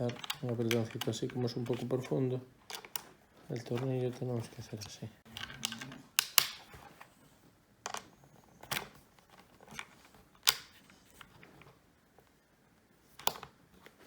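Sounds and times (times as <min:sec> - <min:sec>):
screwdriver clicking on plastic: 0:00.0 - 0:02.1.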